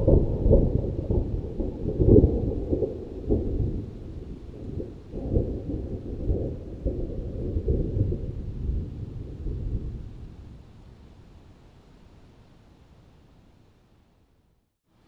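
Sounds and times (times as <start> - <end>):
rolling thunder: 0.0 - 10.8.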